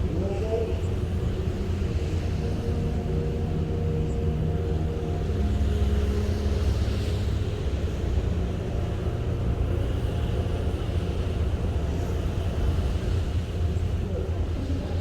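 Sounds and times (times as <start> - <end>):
ship engine rumble and hum: 0.0 - 15.0.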